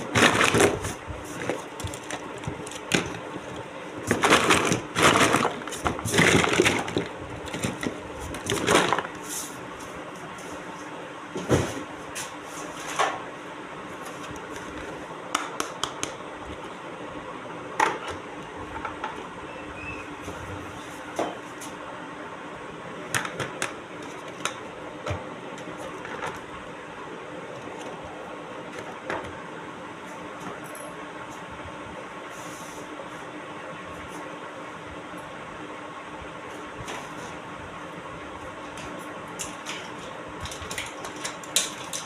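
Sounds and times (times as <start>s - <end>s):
packaging crinkling: 4.0s - 9.1s.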